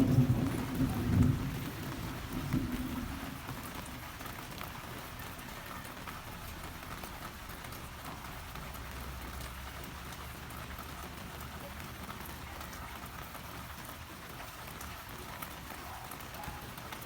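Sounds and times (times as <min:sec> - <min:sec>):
rumble of thunder: 0:00.0 - 0:04.1
heavy rain falling: 0:00.0 - 0:17.0.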